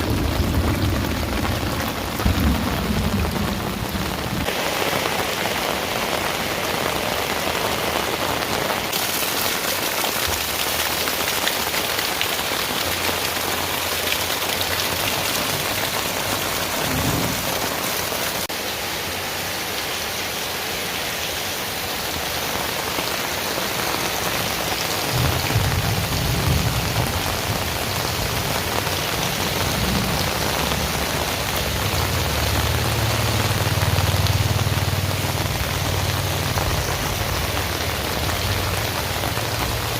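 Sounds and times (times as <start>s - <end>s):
low thunder rumbles: 0.0s - 4.5s, 14.9s - 18.1s, 25.0s - 34.9s
heavy rain pouring: 0.0s - 39.9s.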